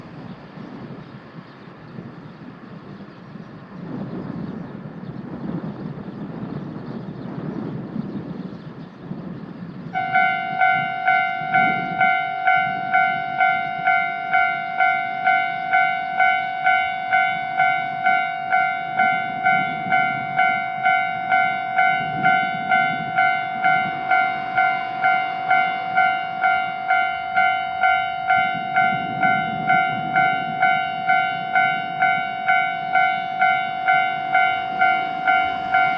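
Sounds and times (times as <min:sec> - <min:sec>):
level-crossing alarm bell ringing: 0:10.0 - 0:35.9.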